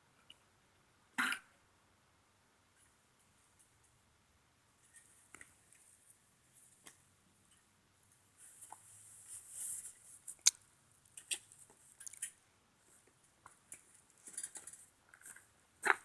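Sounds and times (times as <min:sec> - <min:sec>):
bike parts clicking and tapping: 0:13.4 - 0:16.0.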